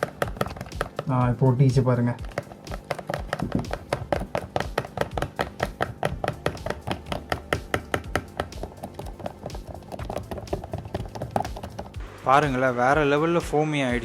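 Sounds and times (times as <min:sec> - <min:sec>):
brush stirring sticky slime: 0:00.0 - 0:12.0.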